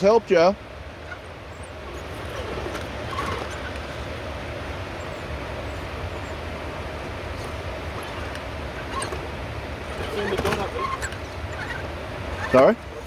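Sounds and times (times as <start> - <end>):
toy car motor whirring: 1.8 - 4.0, 9.9 - 13.0.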